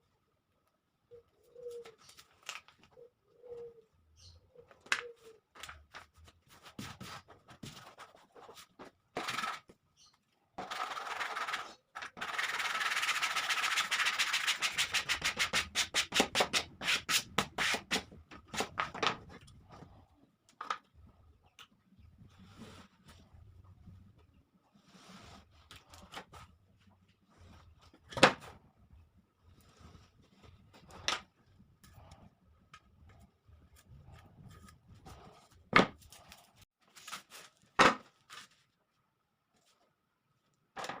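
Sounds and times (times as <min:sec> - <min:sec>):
scratchy rubbing strokes: 0:10.7 - 0:18.0.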